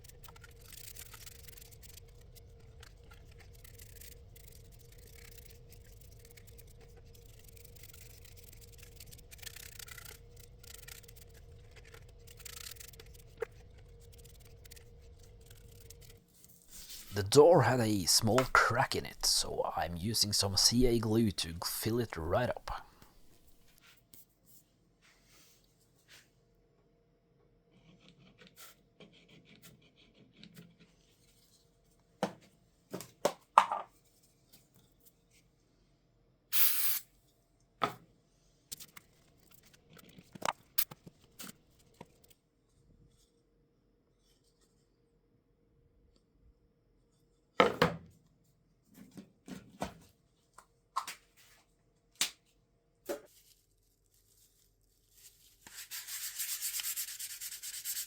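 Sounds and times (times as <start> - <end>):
sandpaper rubbing wood: 55.7 - 58.0.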